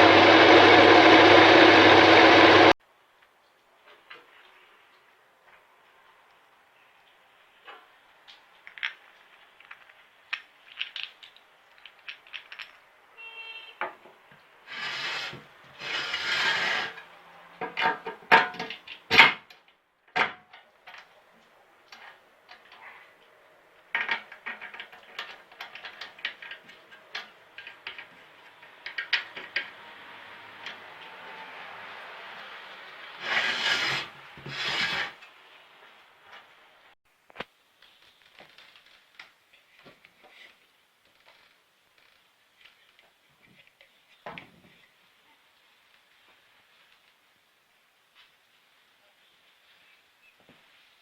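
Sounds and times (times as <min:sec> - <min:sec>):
clicks and knocks of tools: 0:17.6 - 0:29.9
short scraping: 0:33.2 - 0:35.2.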